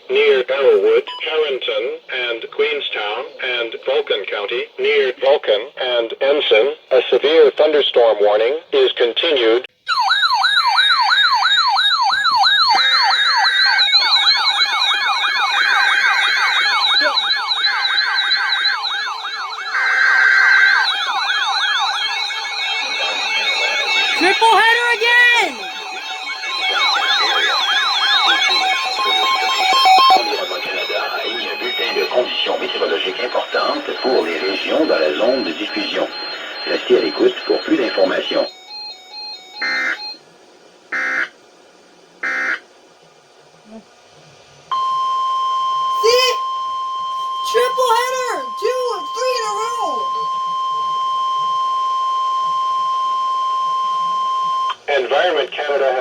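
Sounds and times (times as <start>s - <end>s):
electronic sirens yelping: 9.8s - 40.2s, 40.9s - 41.3s, 42.2s - 42.6s, 44.7s - 56.0s
harsh electronic buzzing bursts: 38.6s - 40.1s, 40.9s - 41.3s, 42.2s - 42.6s.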